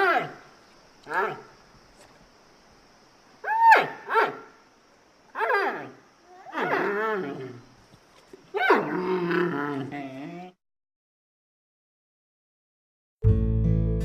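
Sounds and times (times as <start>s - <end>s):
panda yelping barks: 3.4s - 4.5s, 5.4s - 7.0s.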